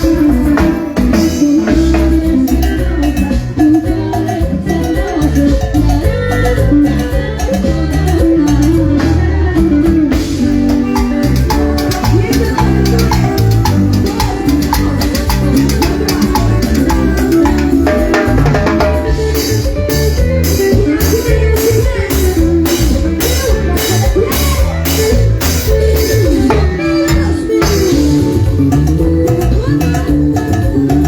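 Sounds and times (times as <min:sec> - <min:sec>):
latin music with drums and bass: 0:00.0 - 0:31.0
sharp percussion strikes: 0:10.1 - 0:31.0.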